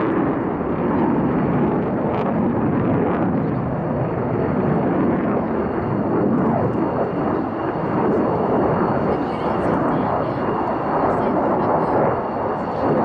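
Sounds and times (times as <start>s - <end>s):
jet engines in flight: 0.0s - 13.0s.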